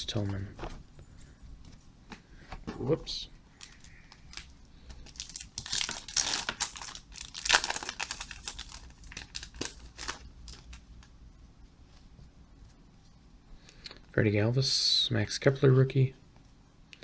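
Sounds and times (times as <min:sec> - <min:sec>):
plastic wrapper crinkling and tearing: 0:03.6 - 0:11.1.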